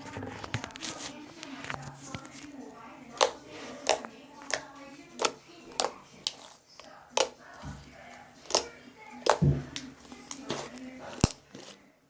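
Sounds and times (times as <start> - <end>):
sharp wet pops: 8.4 - 11.7
slime squished by hand: 8.4 - 11.8.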